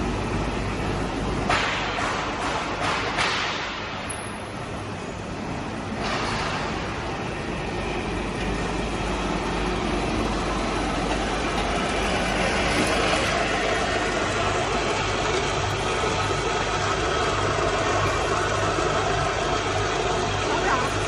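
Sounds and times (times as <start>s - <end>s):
furnace rushing noise: 5.4s - 21.0s.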